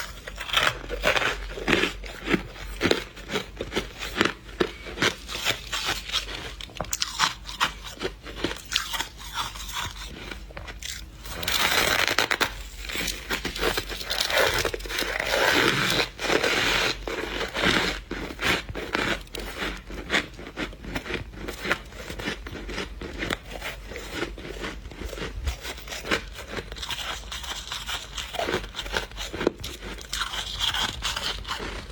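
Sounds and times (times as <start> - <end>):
chewing crunchy frost: 0.0 - 31.9.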